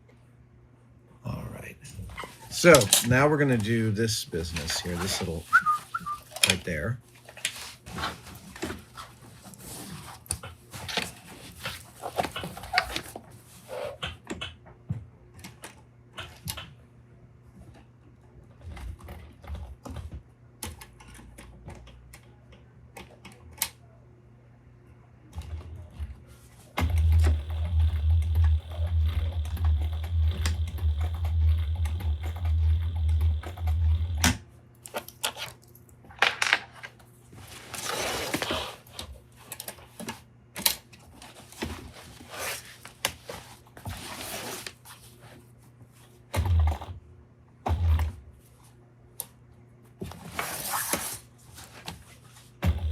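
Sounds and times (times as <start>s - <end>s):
sewing machine stitching: 26.8s - 34.4s, 46.4s - 47.0s, 47.7s - 48.1s, 52.6s - 52.9s
thumps: 26.8s - 34.4s, 46.4s - 46.9s, 47.7s - 48.2s, 52.6s - 52.9s
scattered clicks: 26.8s - 35.2s, 46.4s - 46.9s.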